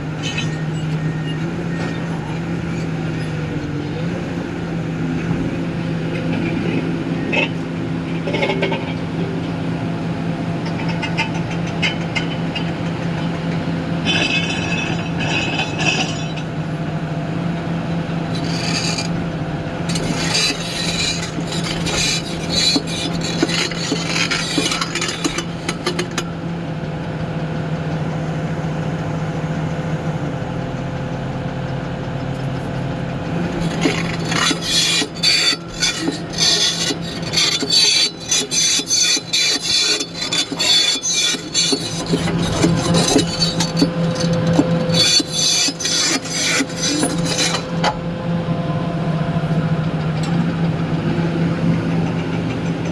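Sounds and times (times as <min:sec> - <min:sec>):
diesel engine running: 0:00.0 - 0:52.9
harsh scraping and grating: 0:14.0 - 0:16.4, 0:18.2 - 0:26.3, 0:33.3 - 0:48.1.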